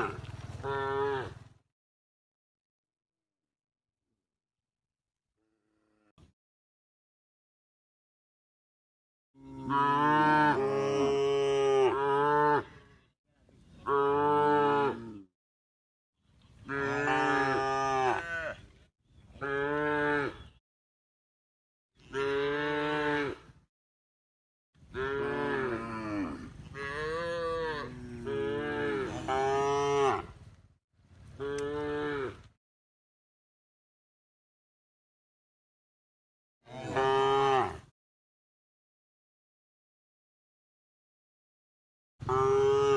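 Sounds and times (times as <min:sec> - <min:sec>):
cows mooing: 0:09.4 - 0:12.8, 0:16.6 - 0:18.6, 0:19.4 - 0:20.4, 0:24.9 - 0:30.4, 0:31.4 - 0:32.5, 0:36.7 - 0:37.9, 0:42.2 - 0:42.9.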